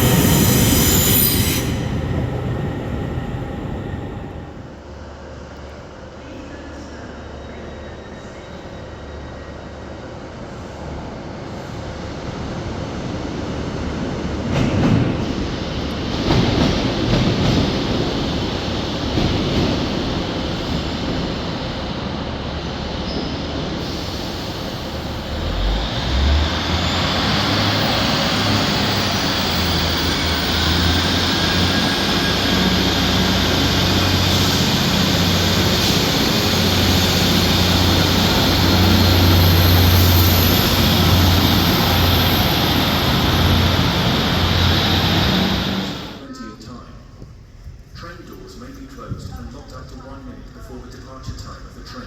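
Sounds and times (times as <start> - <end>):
steady low drone: 0.0 - 5.2
train passing: 0.0 - 7.3, 8.6 - 46.3.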